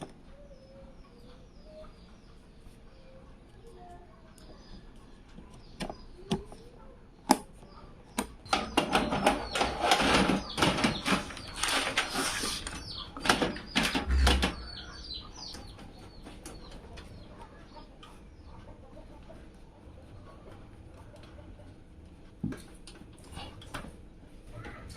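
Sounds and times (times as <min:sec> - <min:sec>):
plastic packaging rustling: 0:09.9 - 0:14.3.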